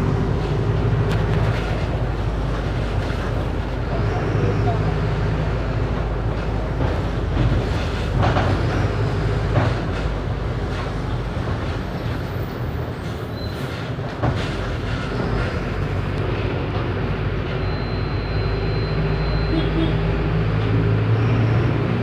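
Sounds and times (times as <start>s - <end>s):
bus diesel engine rumbling: 0.0s - 22.0s
road and body noise: 0.0s - 22.0s
sharp knocks and rattles: 6.0s - 11.9s.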